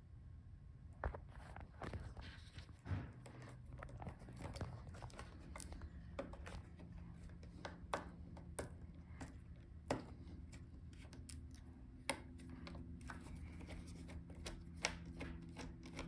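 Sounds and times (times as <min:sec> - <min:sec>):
light clicks and taps: 0:01.6 - 0:16.0
rubber scraping and peeling: 0:12.3 - 0:16.0.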